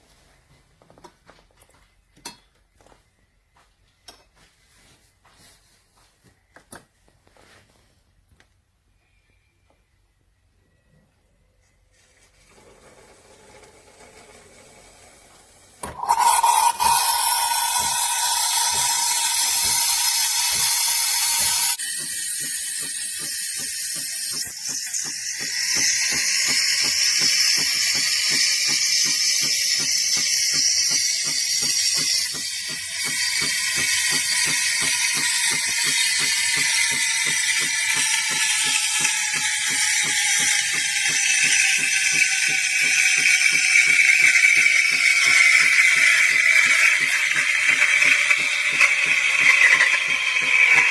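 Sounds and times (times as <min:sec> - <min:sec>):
espresso machine ratcheting: 0:15.8 - 0:50.9.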